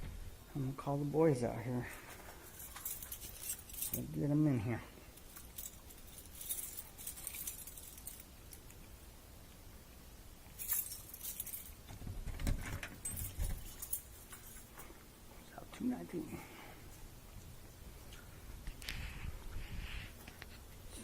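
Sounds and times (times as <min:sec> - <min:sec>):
keys jangling: 0:02.1 - 0:04.1, 0:05.2 - 0:08.6, 0:10.6 - 0:11.9, 0:13.0 - 0:15.0.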